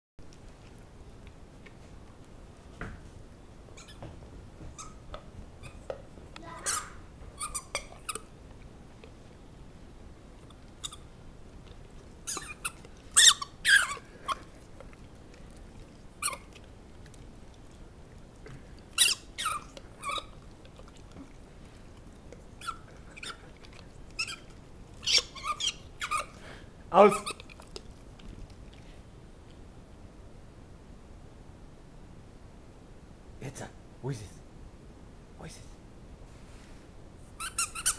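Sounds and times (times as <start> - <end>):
squeaky dog toy squeaking: 6.5 - 8.3, 12.3 - 14.0, 19.0 - 20.3, 24.2 - 26.3, 27.0 - 27.5, 37.4 - 37.9.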